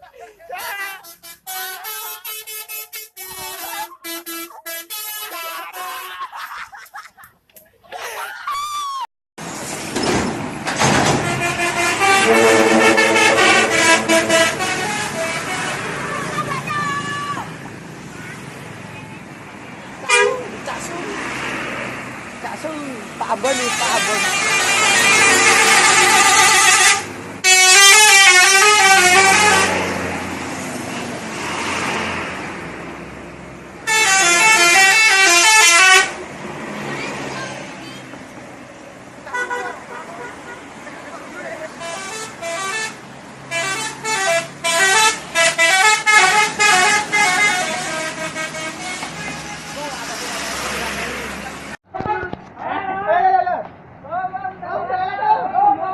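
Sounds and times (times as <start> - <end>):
traffic noise: 0.0 - 55.9
vehicle noise: 0.0 - 55.9
multi-tone musical bus horn: 0.6 - 6.3, 11.0 - 17.0, 20.0 - 20.5, 23.4 - 30.3, 33.8 - 36.2, 39.3 - 40.7, 41.7 - 50.8.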